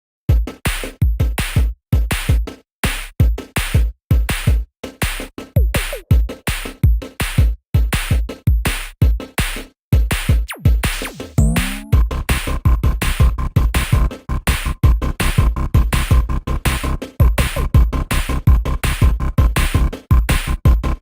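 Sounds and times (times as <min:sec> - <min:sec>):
electronic music with drum-machine beat: 0:00.3 - 0:21.0.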